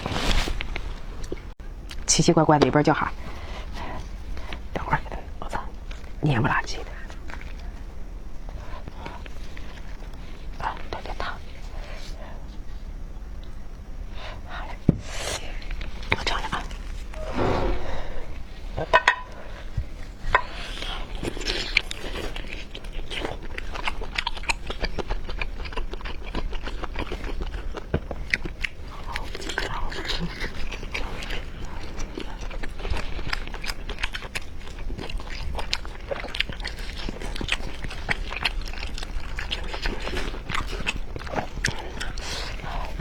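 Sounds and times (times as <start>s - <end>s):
person chewing food: 19.7s - 43.0s.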